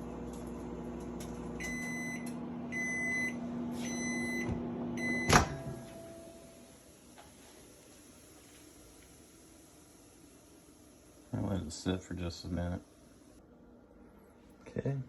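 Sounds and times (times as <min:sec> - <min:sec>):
microwave oven humming: 0:00.0 - 0:13.9
long beeps: 0:01.6 - 0:05.4.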